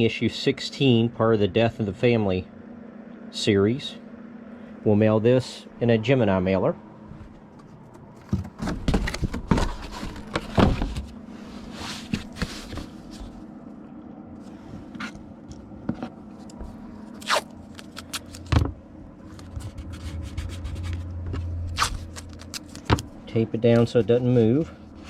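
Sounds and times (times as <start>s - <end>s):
card and plastic rustling: 8.2s - 13.4s, 21.8s - 24.0s.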